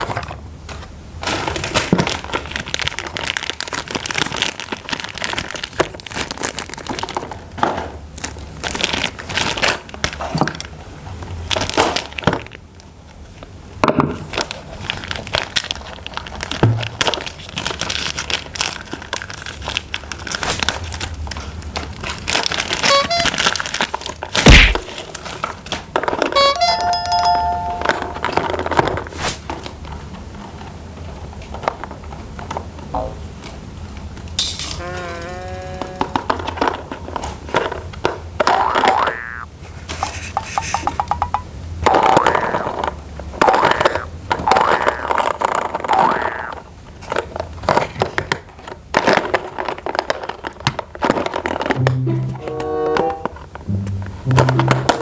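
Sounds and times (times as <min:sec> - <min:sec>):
plastic crinkling: 0:01.2 - 0:13.5, 0:14.2 - 0:26.4, 0:42.4 - 0:51.8
short electronic tones: 0:26.4 - 0:28.4.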